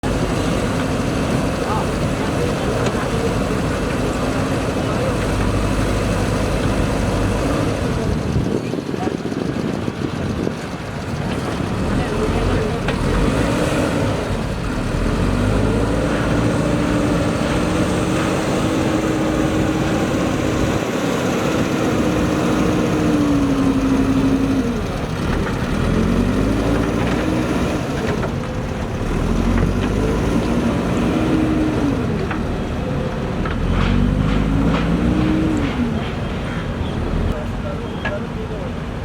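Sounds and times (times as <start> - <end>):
backhoe diesel engine revving: 0.0 - 37.4.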